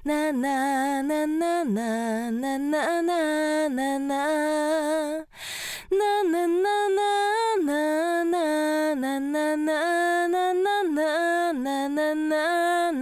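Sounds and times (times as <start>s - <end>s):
woman singing: 0.0s - 13.0s
sharp breath intake: 5.3s - 5.9s.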